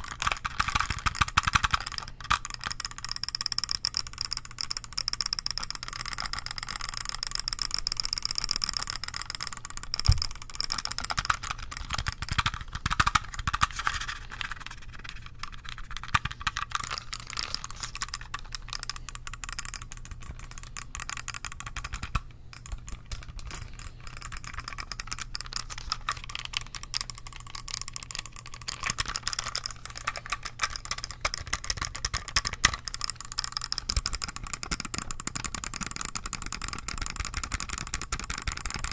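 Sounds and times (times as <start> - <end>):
computer mouse clicking: 0.0 - 38.9.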